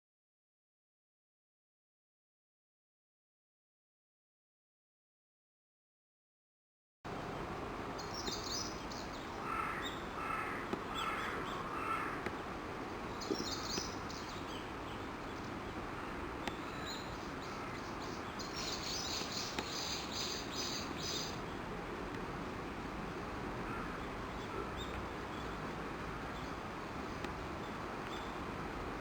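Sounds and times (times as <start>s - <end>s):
steady background hiss: 7.1s - 29.0s
crow cawing: 9.4s - 12.3s, 23.7s - 24.8s.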